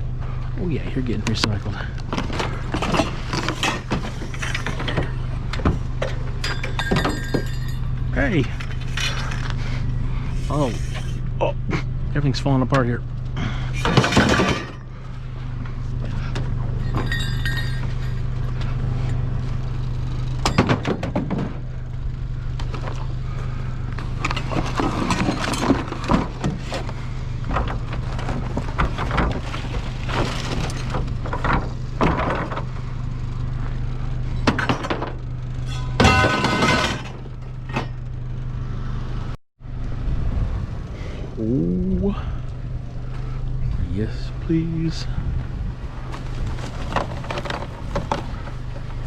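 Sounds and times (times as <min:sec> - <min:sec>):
steady low hum: 0:00.0 - 0:49.0
scrap metal clattering: 0:02.0 - 0:11.2, 0:13.7 - 0:15.1, 0:16.8 - 0:19.3, 0:22.6 - 0:32.9, 0:34.4 - 0:38.2
metallic ring: 0:06.4 - 0:09.4, 0:16.8 - 0:18.5, 0:35.6 - 0:38.1.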